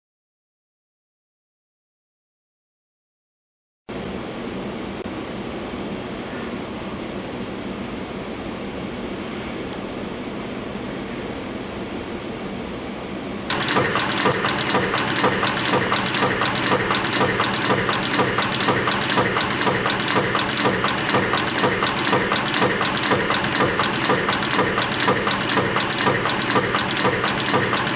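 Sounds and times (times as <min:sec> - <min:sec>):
steady machine hum: 0:12.7 - 0:27.9
sharp mechanical press strokes: 0:13.5 - 0:27.9.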